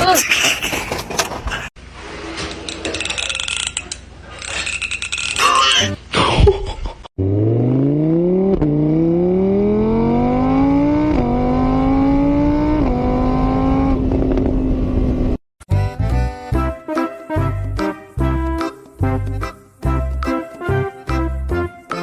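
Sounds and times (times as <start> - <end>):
car engine accelerating: 7.2 - 15.4.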